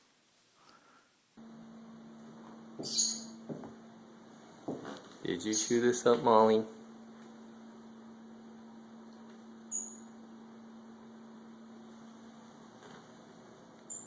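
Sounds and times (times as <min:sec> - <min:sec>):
faint low electrical hum: 0:00.0 - 0:14.0
short high squeak: 0:02.9 - 0:03.4, 0:09.7 - 0:10.1.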